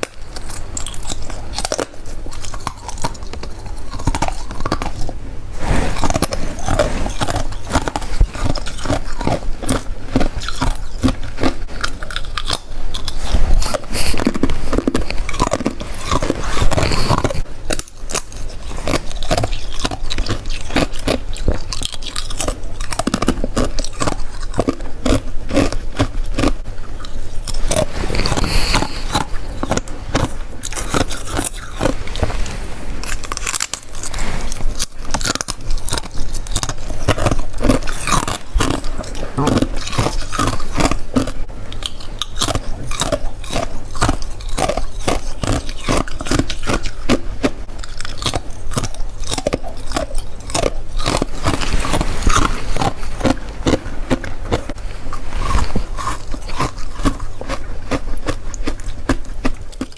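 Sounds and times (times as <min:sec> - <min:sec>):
crunching icy frost: 0:25.6 - 0:46.9.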